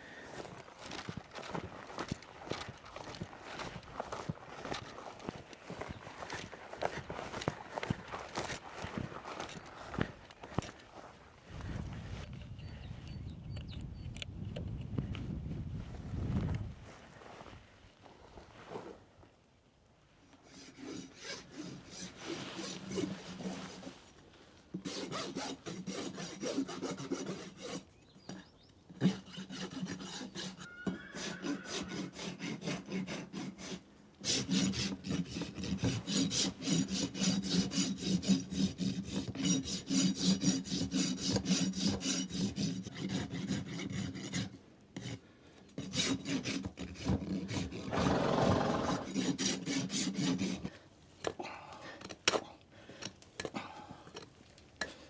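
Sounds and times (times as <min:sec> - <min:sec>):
rasp filing a hoof: 0:20.4 - 0:24.1, 0:24.7 - 0:51.4, 0:52.0 - 0:53.6.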